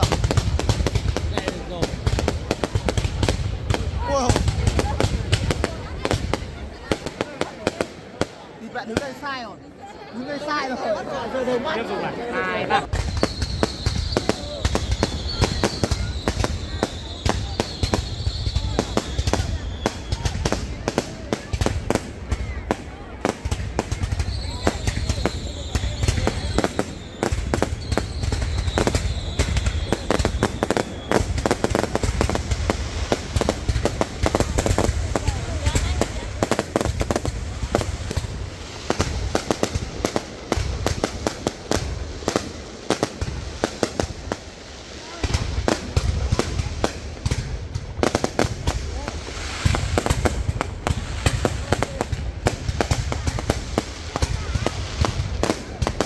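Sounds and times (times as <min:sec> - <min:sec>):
fireworks popping and banging: 0:00.0 - 0:09.3, 0:12.8 - 0:56.0
thin high whistle: 0:13.0 - 0:20.2, 0:24.2 - 0:31.2.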